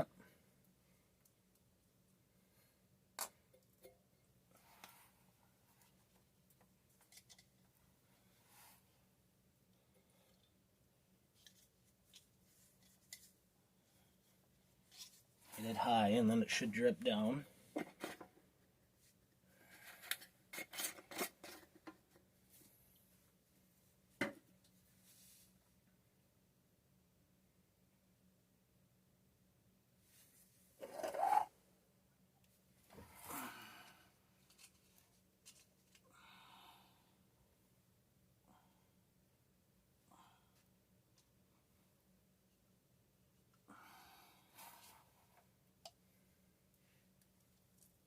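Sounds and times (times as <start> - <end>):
dauber scraping on pipe: 30.8 - 31.5.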